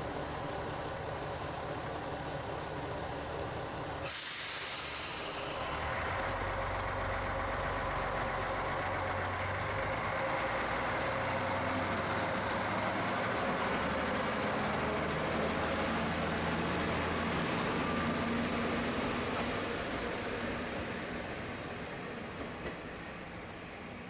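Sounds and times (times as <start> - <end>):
air-brake hiss: 4.0 - 5.9.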